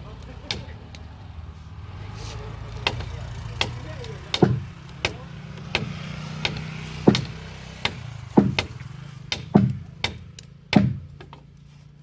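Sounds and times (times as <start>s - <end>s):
low engine hum: 0.0s - 12.0s
hand tool chopping wood: 0.4s - 1.1s, 2.8s - 11.5s.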